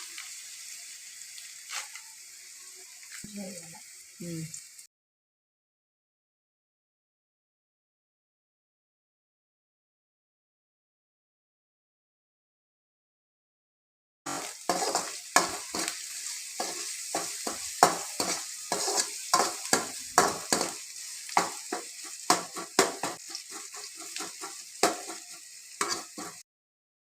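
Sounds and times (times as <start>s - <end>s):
food sizzling in a pan: 0.0s - 4.9s, 14.3s - 26.5s
spoon scraping a pan: 1.4s - 2.2s, 14.3s - 26.4s.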